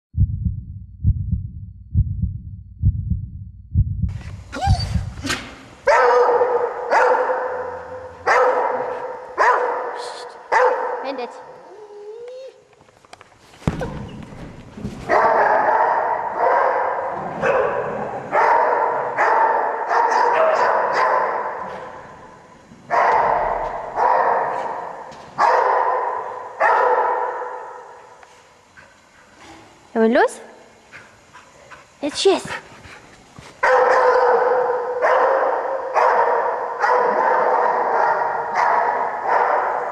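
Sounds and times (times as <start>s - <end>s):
low double thumps: 0.1s - 5.3s
dog barking loudly: 5.9s - 11.1s, 15.1s - 21.6s, 22.9s - 27.8s, 33.6s - 39.9s.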